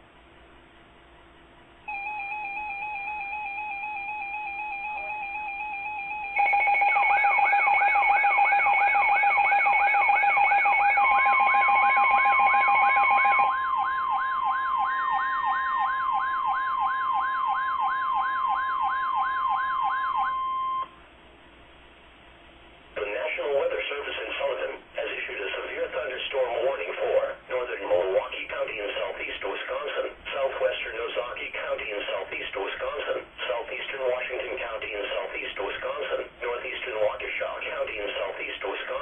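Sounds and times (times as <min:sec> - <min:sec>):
siren-like sweeping tone: 0:01.9 - 0:20.9
wavering two-pitch beep tone: 0:01.9 - 0:20.9
steady single alarm tone: 0:01.9 - 0:21.0.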